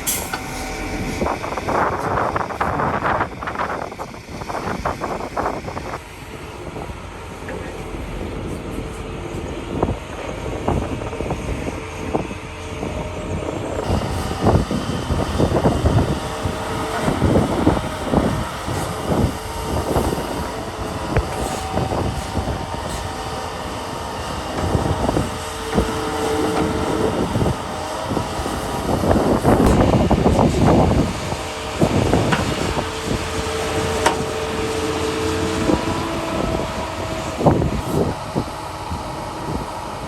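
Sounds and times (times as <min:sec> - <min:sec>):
diesel engine running: 0:00.0 - 0:40.0
knocks and clanks: 0:31.8 - 0:36.0.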